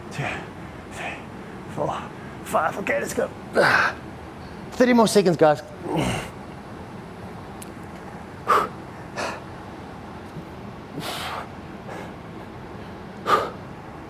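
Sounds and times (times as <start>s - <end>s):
man breathing hard: 8.4s - 9.5s, 11.0s - 13.7s.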